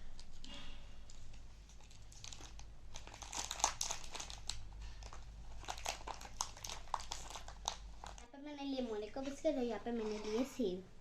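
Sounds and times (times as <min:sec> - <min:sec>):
biscuit packet crinkling: 0:00.0 - 0:08.3.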